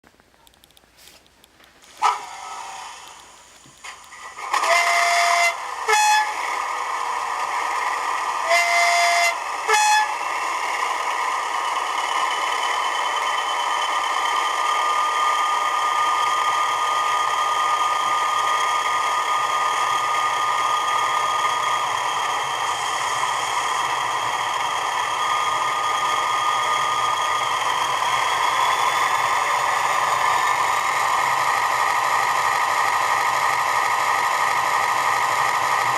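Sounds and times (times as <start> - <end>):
turbocharger whistle: 4.5 - 6.4, 8.4 - 10.2
two-tone train horn: 4.6 - 6.4, 8.4 - 10.2.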